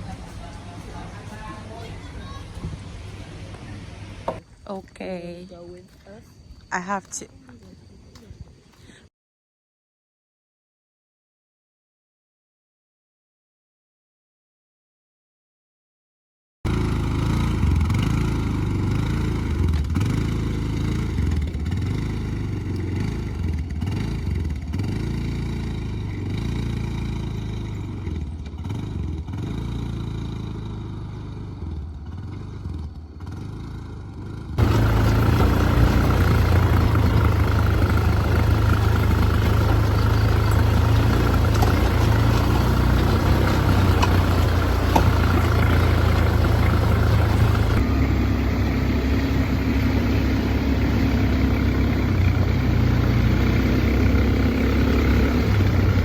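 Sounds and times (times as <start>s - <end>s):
atv engine running: 0.0s - 9.0s, 16.7s - 56.0s
engine drone: 0.0s - 9.0s, 16.7s - 56.0s.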